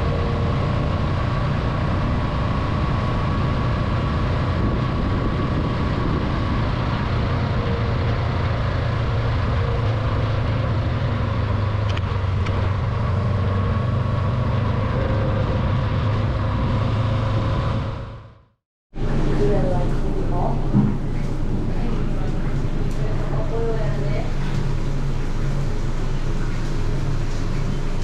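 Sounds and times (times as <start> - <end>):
wind noise: 0.0 - 18.2.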